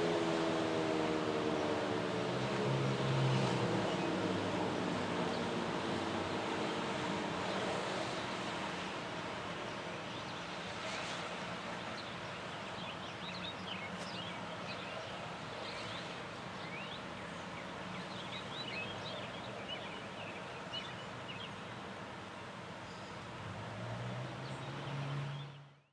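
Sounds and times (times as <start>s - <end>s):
small birds chirping: 11.8s - 21.7s.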